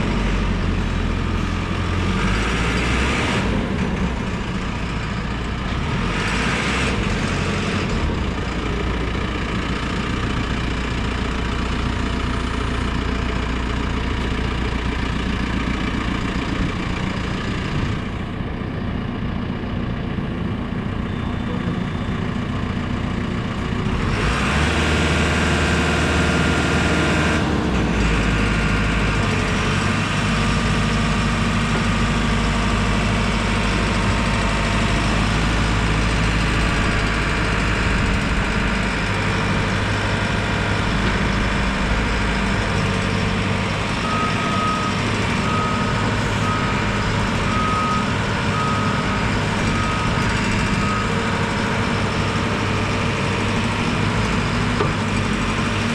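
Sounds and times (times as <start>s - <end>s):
diesel engine running: 0.0s - 55.9s
reversing alarm beeping: 29.2s - 54.1s.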